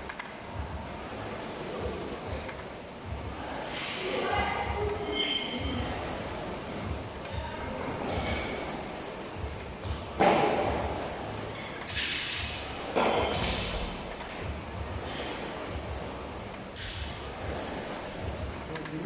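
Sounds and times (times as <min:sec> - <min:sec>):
heavy thuds echoing in a hall: 0:04.2 - 0:18.8.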